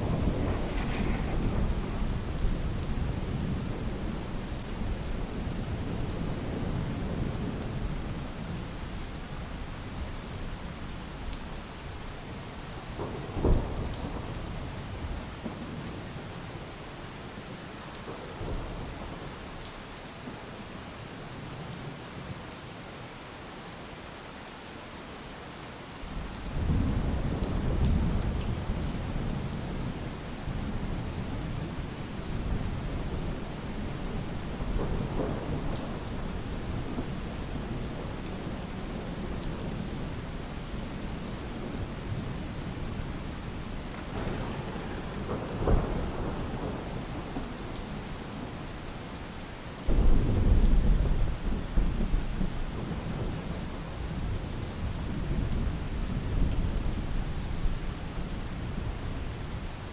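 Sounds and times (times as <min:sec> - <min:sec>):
sharp thunderclap: 0:00.0 - 0:04.0, 0:43.9 - 0:48.0, 0:49.9 - 0:53.2
low rolling thunder: 0:00.0 - 0:09.0, 0:12.8 - 0:16.0, 0:26.2 - 0:48.9, 0:49.9 - 0:59.0
steady rain falling: 0:00.0 - 0:59.9.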